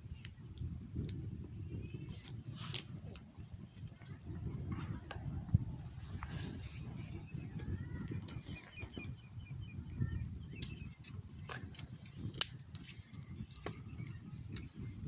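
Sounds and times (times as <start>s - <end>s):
small bird chirping: 1.5s - 2.9s, 5.2s - 11.5s, 13.1s - 15.0s.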